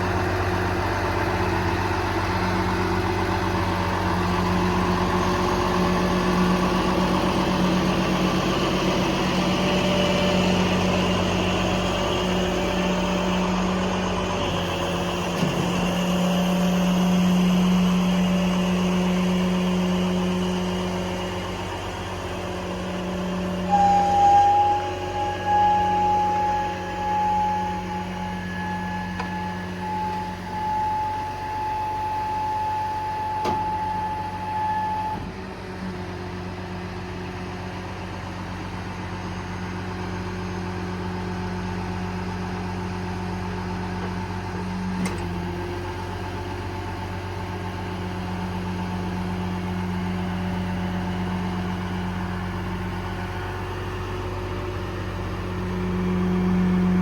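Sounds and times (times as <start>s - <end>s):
diesel truck engine running: 0.0s - 57.0s
high-pitched whine: 9.4s - 35.0s.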